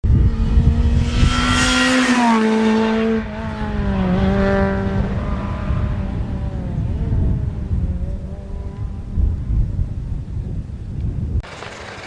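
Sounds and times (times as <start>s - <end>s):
rally car engine at high revs: 0.1s - 9.0s.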